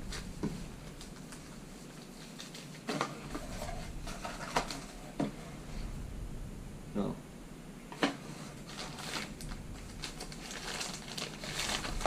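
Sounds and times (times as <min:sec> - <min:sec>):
packaging knocks and rustles: 0:08.0 - 0:12.0.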